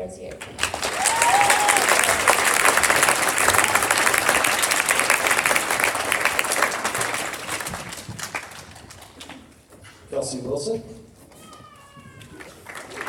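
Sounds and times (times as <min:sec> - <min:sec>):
audience applauding: 0:00.4 - 0:09.6, 0:12.2 - 0:13.0.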